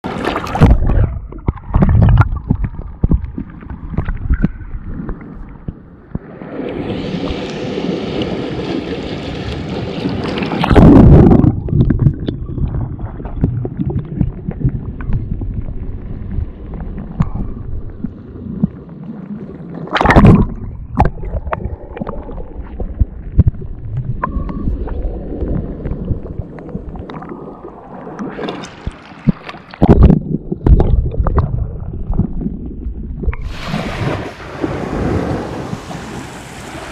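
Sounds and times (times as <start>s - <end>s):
wind rumbling on microphone: 0.0s - 36.9s
loud bursts of water: 33.4s - 36.9s
seawater sloshing at the shore: 33.4s - 36.9s.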